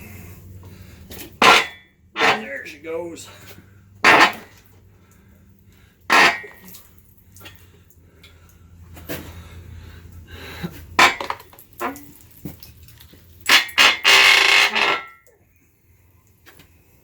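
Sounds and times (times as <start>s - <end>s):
metal clanks and knocks: 1.2s - 2.7s, 4.0s - 4.6s, 6.1s - 6.7s, 11.0s - 12.0s.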